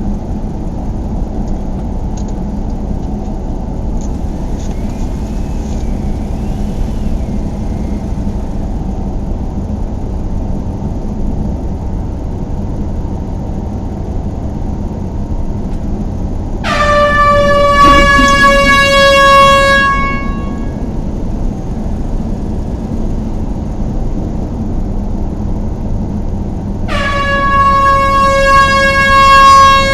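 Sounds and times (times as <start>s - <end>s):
steady low rumble: 3.8s - 26.9s
loud horn blast: 4.1s - 9.2s, 16.6s - 24.0s, 26.9s - 29.9s.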